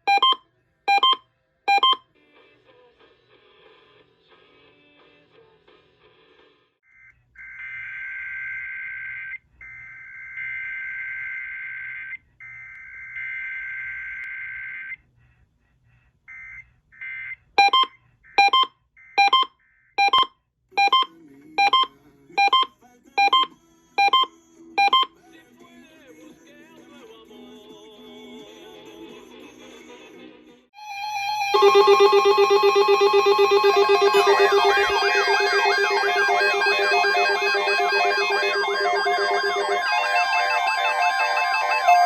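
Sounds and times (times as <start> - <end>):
electronic beeps: 0.0 - 2.0, 17.6 - 25.1, 31.1 - 42.0
warbling digital data signal: 31.1 - 42.0.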